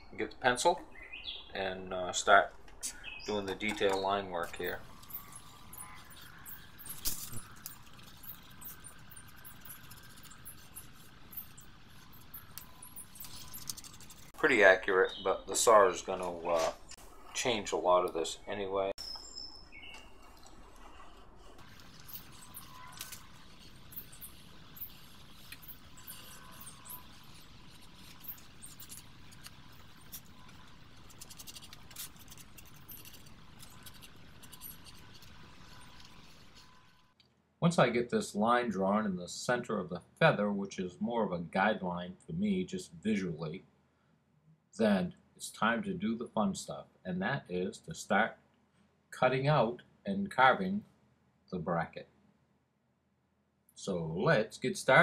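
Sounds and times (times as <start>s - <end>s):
low hum: 1.8s - 37.2s
pencil scratching on wood: 4.5s - 14.4s, 20.5s - 36.9s.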